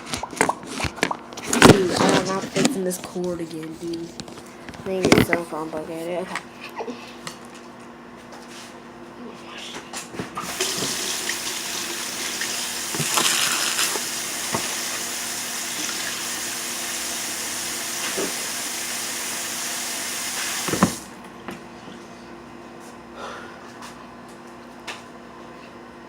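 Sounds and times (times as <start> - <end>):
water running from tap: 10.4 - 21.1
tap shut-off knock: 20.6 - 21.0.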